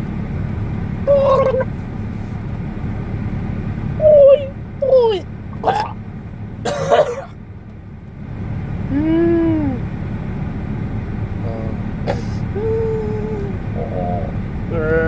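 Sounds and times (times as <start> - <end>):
person making hooting alien noise: 1.1 - 1.7, 11.5 - 15.0
person making breathy burst: 12.1 - 13.6.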